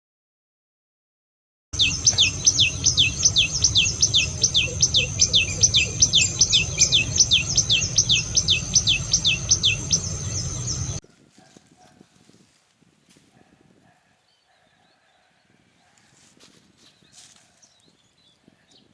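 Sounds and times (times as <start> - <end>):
bird singing sharp notes: 1.8 - 11.0
steady high whine: 1.8 - 11.0.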